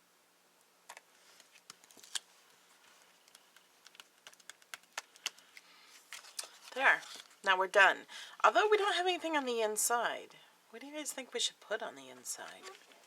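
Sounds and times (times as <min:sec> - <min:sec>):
cardstock clicks and taps: 0:03.2 - 0:05.6.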